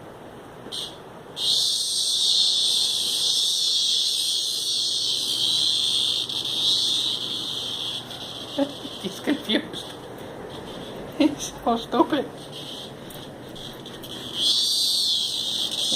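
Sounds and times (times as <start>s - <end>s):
cicada chirp: 0.7s - 11.6s, 12.3s - 15.9s
cicada buzzing: 0.7s - 15.9s.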